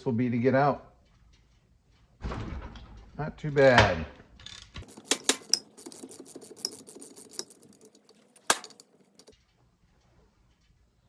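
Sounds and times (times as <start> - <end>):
metallic clink: 4.8 - 9.3
ratchet clicking: 4.8 - 9.3.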